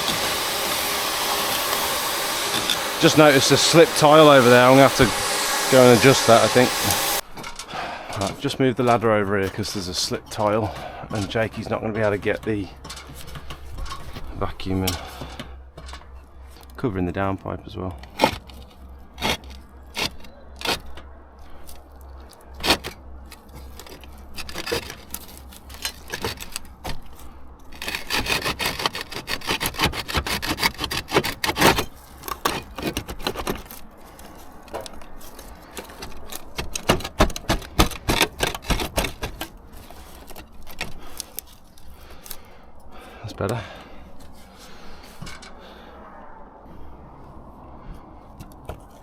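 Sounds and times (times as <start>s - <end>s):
roof tiles scraping and knocking: 5.8s - 45.8s, 48.4s - 49.0s.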